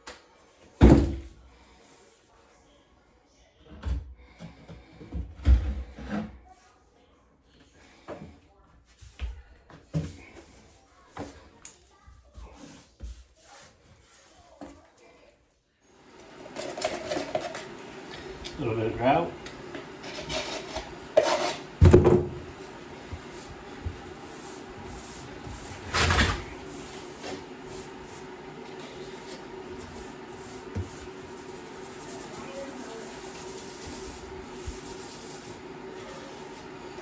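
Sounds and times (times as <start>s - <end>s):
grout scraping and knocking: 4.5s - 6.4s, 9.0s - 14.8s, 16.1s - 37.0s
grout rubbing on tile: 10.2s - 14.8s, 19.3s - 37.0s.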